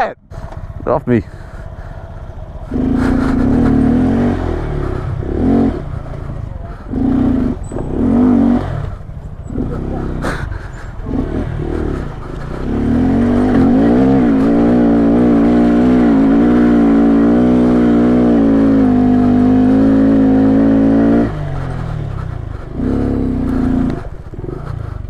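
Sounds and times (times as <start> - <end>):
motorcycle engine revving: 0.0 - 25.0.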